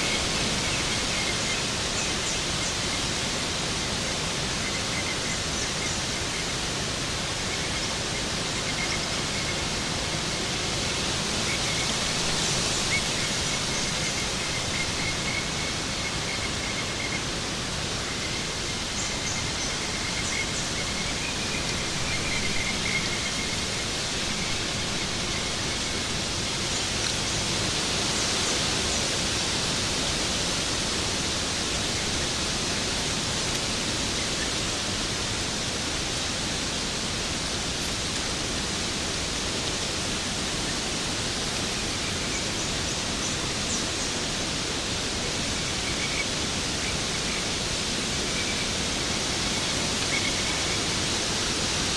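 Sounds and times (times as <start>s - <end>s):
waterfall rushing: 0.0s - 51.9s.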